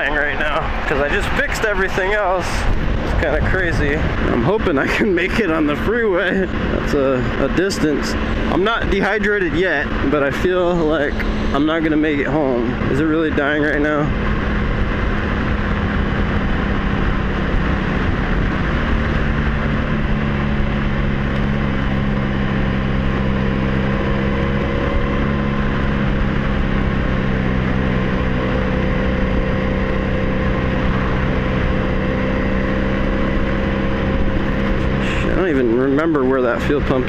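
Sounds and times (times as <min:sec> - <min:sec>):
motorcycle engine drone: 0:00.0 - 0:37.0
wind rush on microphone: 0:00.0 - 0:37.0.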